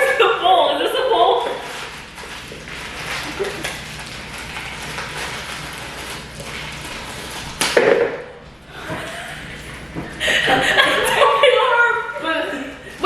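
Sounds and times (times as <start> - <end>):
crackling rustling handling noise: 0.0 - 13.0.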